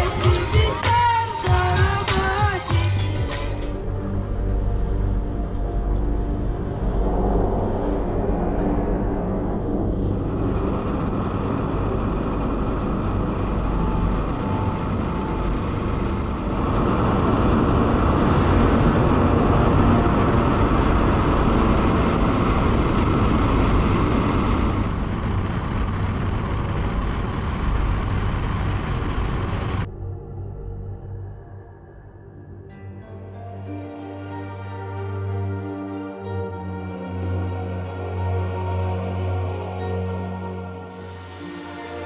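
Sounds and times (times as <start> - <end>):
vehicle running noise: 0.0 - 29.9.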